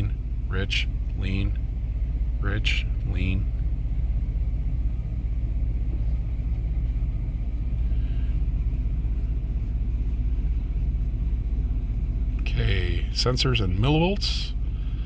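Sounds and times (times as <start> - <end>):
pickup engine idling: 0.0 - 15.0.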